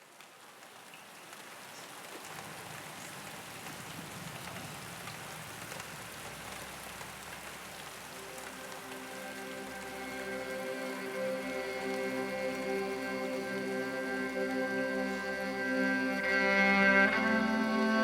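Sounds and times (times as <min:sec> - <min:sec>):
rain pattering: 0:00.0 - 0:18.0
keyboard pad chord: 0:08.2 - 0:18.0.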